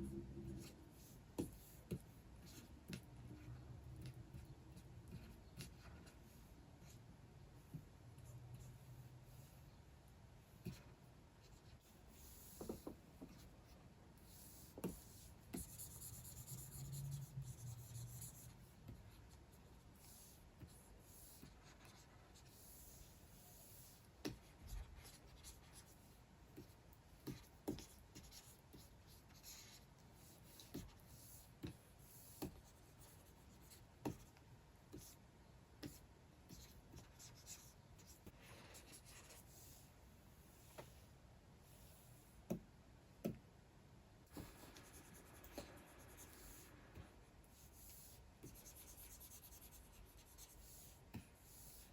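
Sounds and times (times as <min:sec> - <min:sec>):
stylus scratching on screen: 0:14.4 - 0:19.4.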